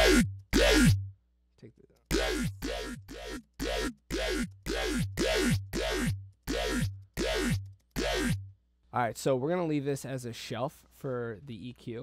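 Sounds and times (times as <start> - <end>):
dubstep synth bass hits: 0.0 - 1.1, 2.1 - 8.5.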